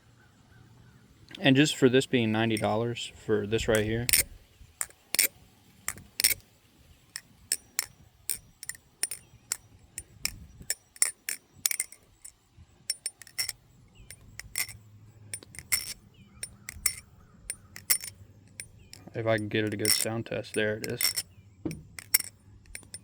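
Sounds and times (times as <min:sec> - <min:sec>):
butterfly knife clicking: 0:03.7 - 0:05.3, 0:05.9 - 0:06.4, 0:07.2 - 0:14.8, 0:15.4 - 0:20.1.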